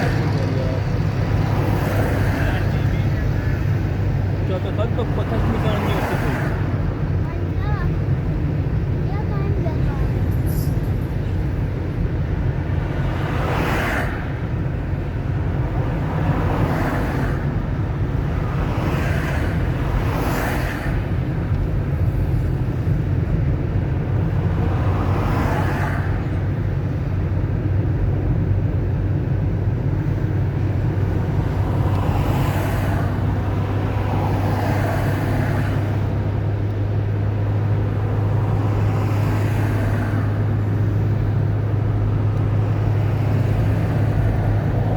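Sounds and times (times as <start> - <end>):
car engine and road drone: 0.0 - 44.9.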